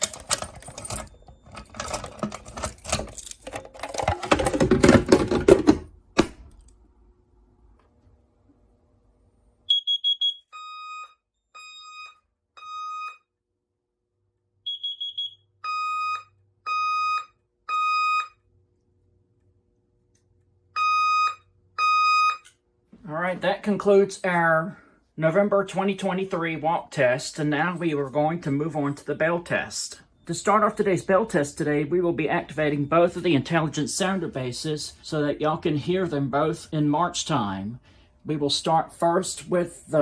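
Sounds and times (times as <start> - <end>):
fire alarm tones: 9.7 - 13.3, 14.6 - 18.4, 20.8 - 22.5.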